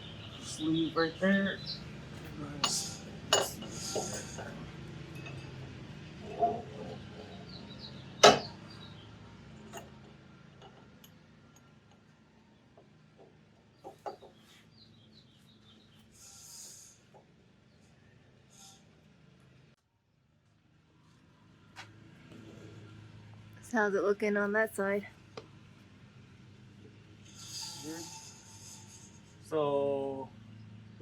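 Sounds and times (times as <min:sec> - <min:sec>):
metal parts clinking and knocking: 0:02.2 - 0:04.5.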